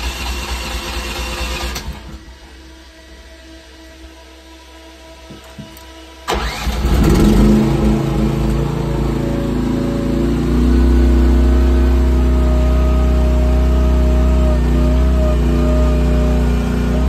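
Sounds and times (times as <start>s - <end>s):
small engine revving high: 6.3s - 17.0s.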